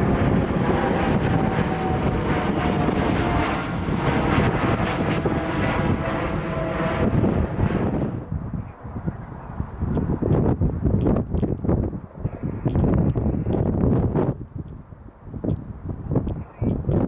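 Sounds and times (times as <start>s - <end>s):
faint jet whine: 0.0s - 10.2s
jet engines roaring: 0.0s - 10.4s.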